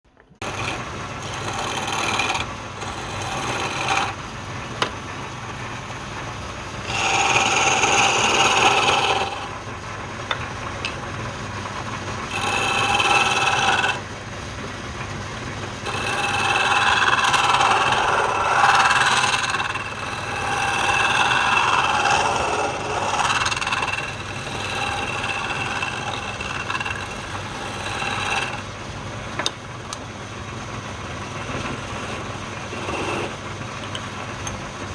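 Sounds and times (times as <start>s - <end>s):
turning tool cutting wood: 0.4s - 4.2s, 6.8s - 9.6s, 12.1s - 14.1s, 15.8s - 28.7s, 31.5s - 33.5s
wood lathe humming: 0.4s - 4.3s, 6.8s - 9.6s, 12.1s - 14.1s, 15.7s - 28.8s, 31.3s - 33.5s.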